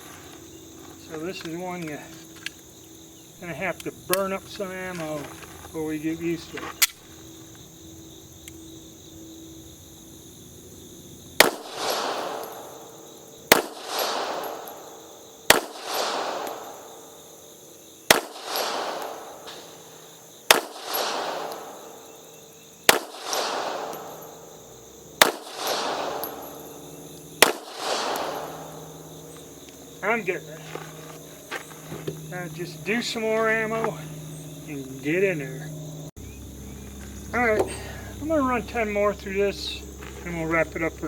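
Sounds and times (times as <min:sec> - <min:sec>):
pistol shots with echo: 0:11.4 - 0:17.2, 0:18.1 - 0:29.6.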